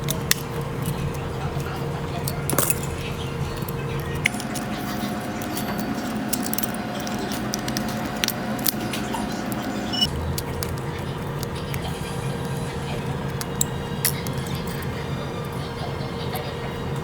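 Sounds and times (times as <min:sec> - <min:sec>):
small metal tools clicking: 0:00.0 - 0:11.5
steady background hum: 0:00.0 - 0:17.0.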